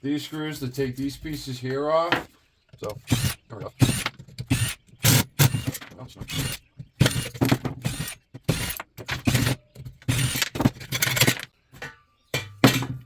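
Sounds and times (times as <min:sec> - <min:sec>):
mechanical ratcheting: 0:03.0 - 0:11.5
metal clatter: 0:08.7 - 0:13.0.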